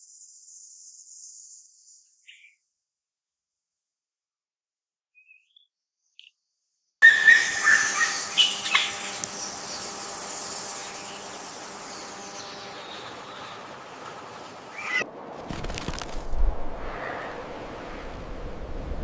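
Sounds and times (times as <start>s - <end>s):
bird chirping: 2.2s - 2.6s, 5.1s - 15.0s
faint hum: 7.0s - 19.0s.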